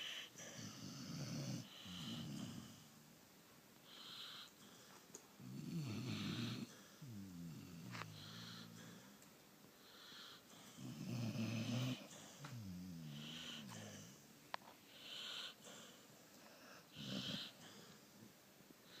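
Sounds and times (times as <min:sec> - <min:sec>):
person snoring: 0:05.4 - 0:09.1, 0:10.1 - 0:14.2, 0:16.9 - 0:17.8.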